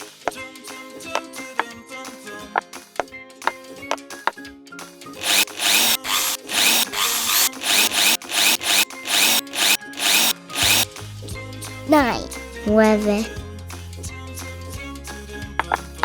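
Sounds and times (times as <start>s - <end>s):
toy drill whirring: 5.2s - 10.9s.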